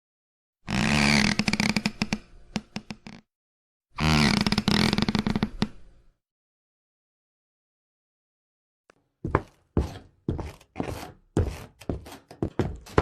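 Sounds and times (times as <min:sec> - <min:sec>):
wooden floorboard creaking: 0:04.0 - 0:05.8, 0:09.3 - 0:13.0.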